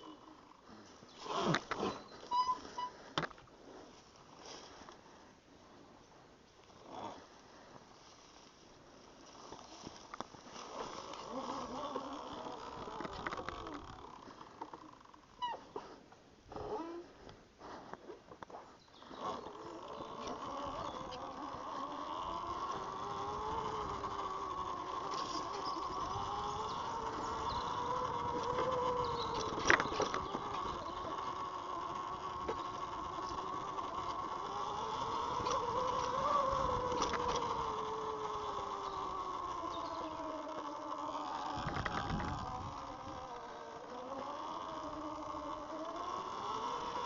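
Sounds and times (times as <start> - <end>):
electric motorbike motor whining: 9.3 - 15.2, 19.0 - 47.0
wind and road noise: 19.0 - 47.0.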